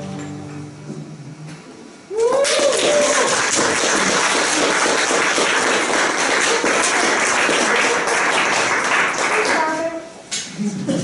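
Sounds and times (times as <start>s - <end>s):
crowd applauding: 2.2s - 10.0s.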